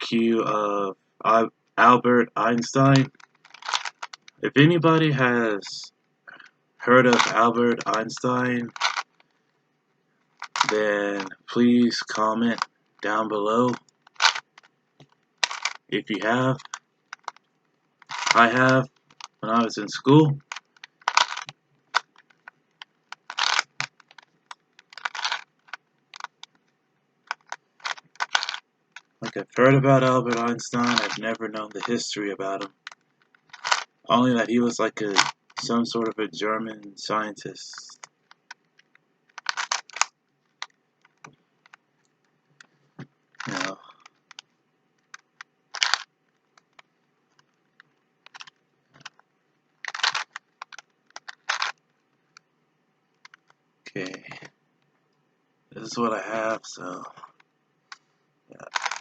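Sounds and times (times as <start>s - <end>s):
plastic cube scraping turns: 2.5s - 4.4s, 6.3s - 9.5s, 10.2s - 36.9s, 37.8s - 52.4s, 53.2s - 54.5s, 55.8s - 59.0s
plastic puzzle cube clicking: 2.5s - 4.4s, 7.1s - 9.3s, 10.3s - 11.4s, 12.4s - 19.4s, 20.0s - 29.3s, 30.3s - 32.0s, 32.6s - 34.0s, 35.1s - 35.7s, 37.8s - 41.8s, 43.3s - 49.2s, 49.8s - 52.4s, 58.7s - 59.0s.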